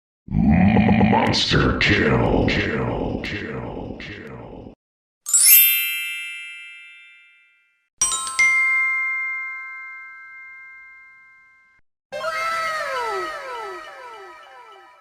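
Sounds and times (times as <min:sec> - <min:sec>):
shimmering chime: 0:05.3 - 0:11.7.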